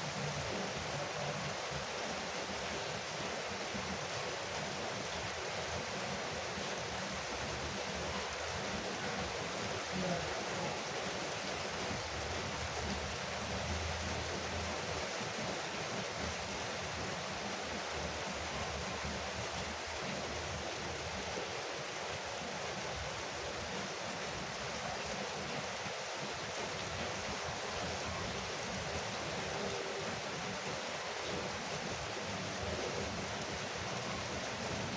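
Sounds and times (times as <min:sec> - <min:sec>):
heavy rain on a roof: 0:00.0 - 0:34.9.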